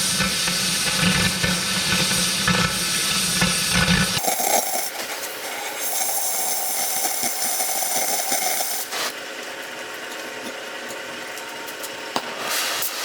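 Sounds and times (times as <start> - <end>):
cutting torch hissing and crackling: 0.0 - 9.2, 12.2 - 13.0.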